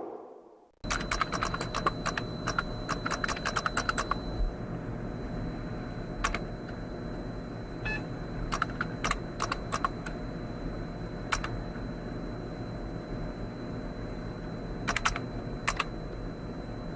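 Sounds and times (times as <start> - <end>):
low hum: 0.0 - 16.9
sharp clicks: 0.8 - 4.2, 6.2 - 6.4, 8.5 - 10.2, 11.3 - 11.6, 14.9 - 15.9.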